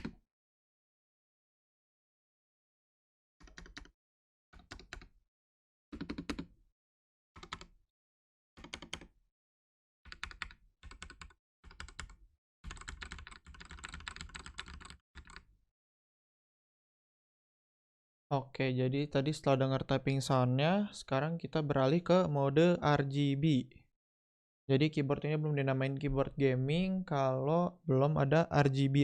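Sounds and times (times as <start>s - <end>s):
mechanical keyboard typing: 3.5s - 3.9s, 6.0s - 6.5s, 7.4s - 7.7s, 8.6s - 9.1s, 10.1s - 12.1s, 12.7s - 15.4s.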